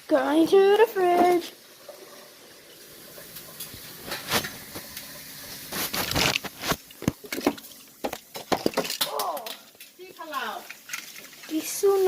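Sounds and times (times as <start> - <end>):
rustling: 4.0 - 7.4.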